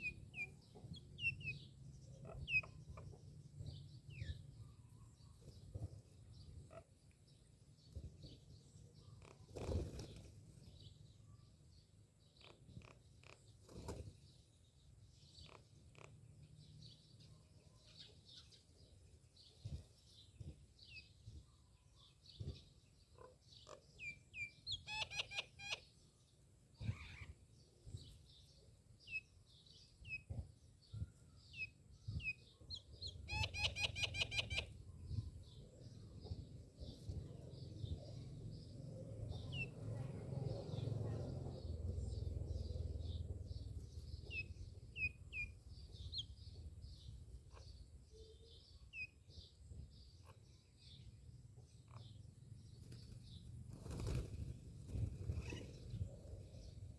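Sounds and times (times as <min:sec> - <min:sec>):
myna birds calling: 0:00.0 - 0:10.9, 0:22.0 - 0:26.1, 0:29.0 - 0:51.1, 0:51.7 - 0:56.9.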